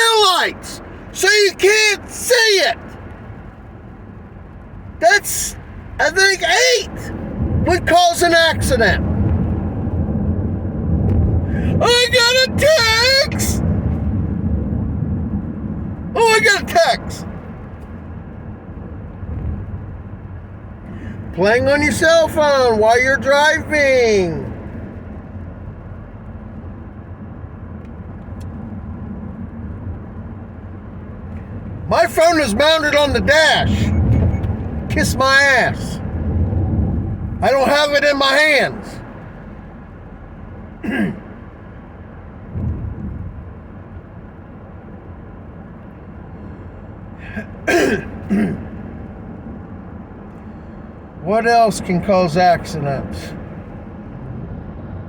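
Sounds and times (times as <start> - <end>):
car engine and road rumble: 0.0 - 55.0
man clearing throat: 40.8 - 41.4, 47.2 - 48.8.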